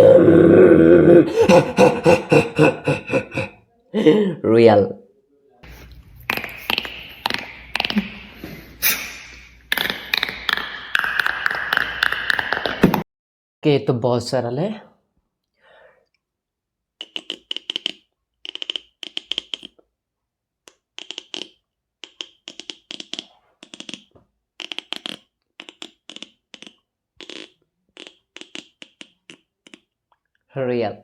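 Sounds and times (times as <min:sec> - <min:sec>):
beatboxer mouth clicking pops: 0:05.8 - 0:13.0, 0:17.0 - 0:19.9, 0:20.6 - 0:30.3.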